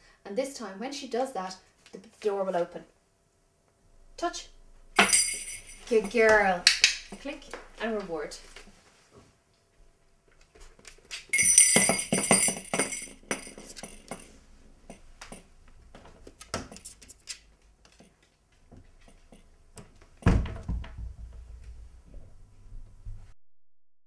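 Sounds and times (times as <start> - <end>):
small metal chimes jangling: 5.0 - 7.2, 11.3 - 15.5
dull thud: 20.2 - 22.4.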